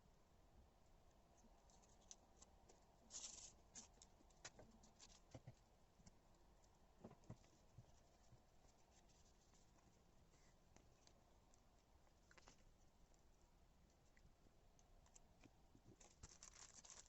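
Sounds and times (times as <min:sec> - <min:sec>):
tape and paper crinkling: 0:01.7 - 0:05.5, 0:15.9 - 0:17.0.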